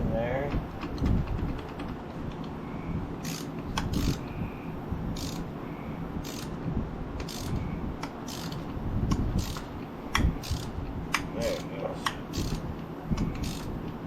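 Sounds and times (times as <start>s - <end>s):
ratchet wrench clicking: 3.2s - 4.3s, 5.2s - 5.5s, 6.2s - 6.5s, 7.2s - 12.6s, 13.2s - 13.8s.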